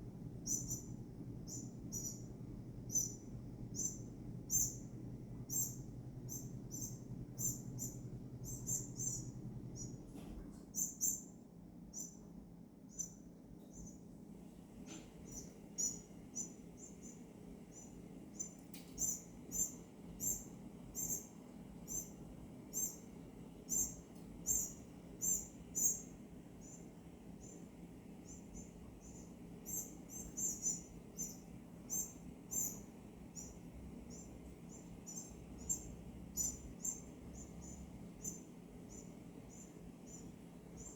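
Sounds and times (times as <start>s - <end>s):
faint low hum: 0.0s - 40.9s
bird chip calls: 0.4s - 0.9s, 1.5s - 2.2s, 3.8s - 4.8s, 5.5s - 9.9s, 23.7s - 26.0s, 28.2s - 32.8s, 34.1s - 40.9s.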